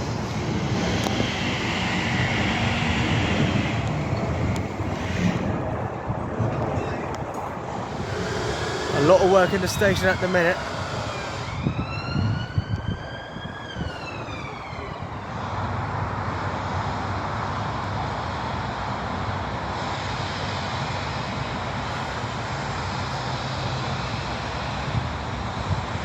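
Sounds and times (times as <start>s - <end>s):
gliding pitched whine: 0.0s - 15.2s
engine-like rushing noise: 0.0s - 26.0s.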